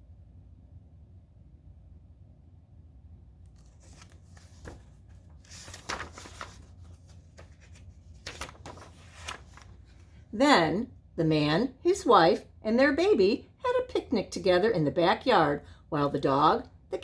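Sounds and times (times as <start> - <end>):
book pages rustling: 3.4 - 10.3.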